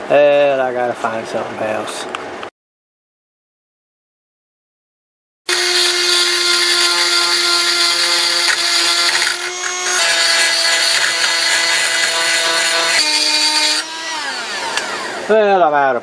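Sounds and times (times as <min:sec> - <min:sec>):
cordless power tool whining: 0:05.5 - 0:15.4.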